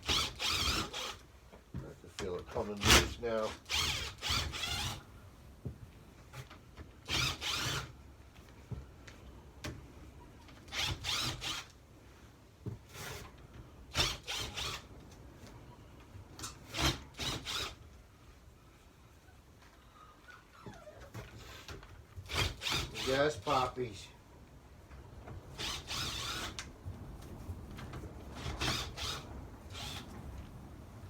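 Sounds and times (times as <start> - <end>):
screwdriver grinding and ratcheting: 0.0 - 1.2, 2.8 - 5.0, 7.1 - 7.9, 21.5 - 23.6, 25.6 - 26.7, 28.4 - 30.2.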